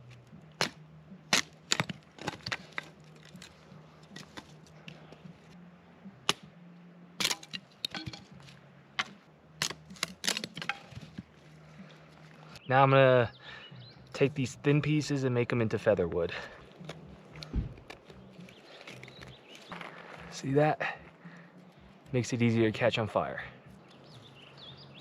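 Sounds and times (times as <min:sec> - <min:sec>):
wood cracking and snapping: 0:00.6 - 0:05.0, 0:07.2 - 0:08.4, 0:09.0 - 0:11.4, 0:16.6 - 0:20.0.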